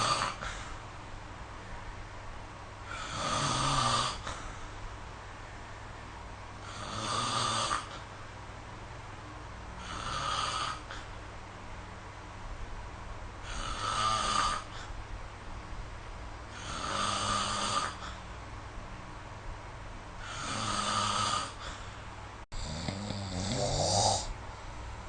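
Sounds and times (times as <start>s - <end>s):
person snoring: 0.0s - 0.6s, 2.9s - 4.5s, 6.6s - 8.0s, 9.8s - 11.1s, 13.4s - 14.9s, 16.5s - 18.2s, 20.2s - 21.9s, 22.6s - 24.4s.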